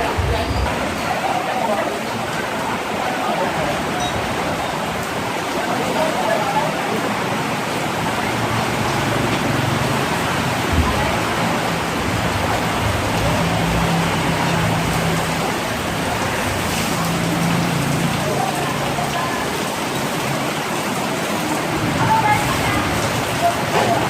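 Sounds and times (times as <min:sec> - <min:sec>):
steady rain falling: 0:00.0 - 0:24.0.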